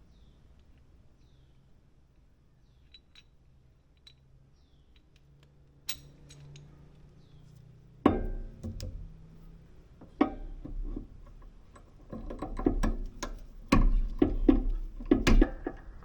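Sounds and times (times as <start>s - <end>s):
metallic clanks with ring: 5.9s - 6.7s, 8.1s - 8.6s.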